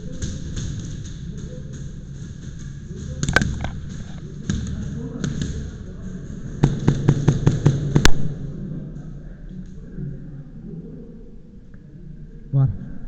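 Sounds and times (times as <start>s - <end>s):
airsoft guns firing: 3.0s - 5.8s, 6.6s - 8.5s.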